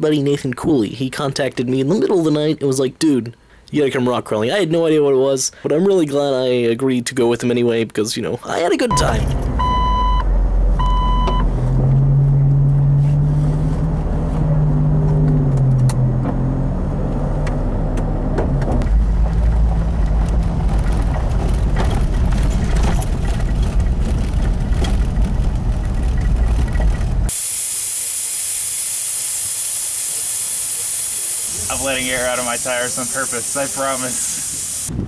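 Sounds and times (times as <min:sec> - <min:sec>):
vehicle engine rumbling: 0:08.9 - 0:27.6, 0:28.4 - 0:35.0
air hissing from tyre valve: 0:27.3 - 0:34.9.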